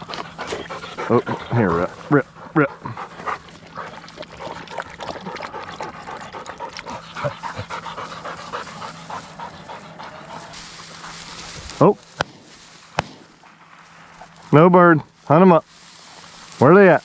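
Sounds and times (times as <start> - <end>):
dog panting: 0.0 - 11.5.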